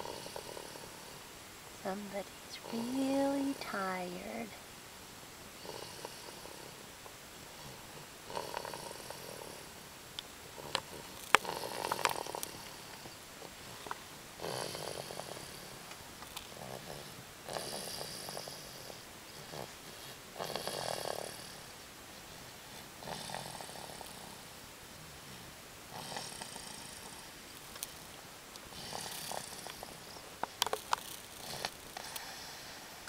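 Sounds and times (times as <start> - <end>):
baby snoring: 0.0 - 1.2, 5.6 - 6.8, 7.5 - 9.7, 10.6 - 13.2, 14.4 - 15.8, 16.5 - 21.7, 22.7 - 24.6, 25.9 - 27.4, 28.7 - 33.0.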